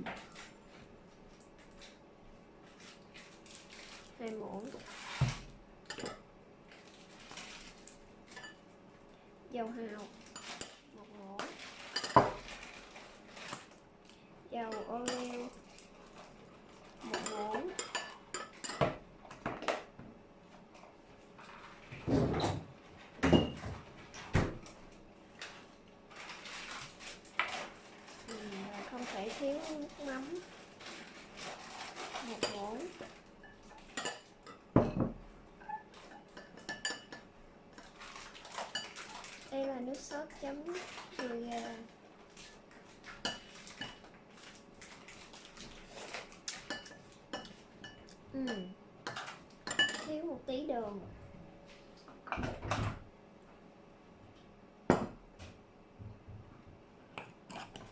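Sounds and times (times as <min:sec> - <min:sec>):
spoon clinking against bowl: 0:46.7 - 0:50.1.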